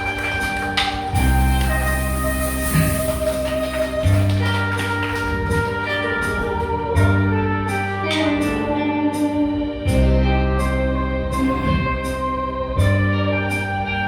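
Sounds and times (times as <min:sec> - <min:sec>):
steady drum beat: 0:00.0 - 0:08.7
held bass notes: 0:00.0 - 0:14.0.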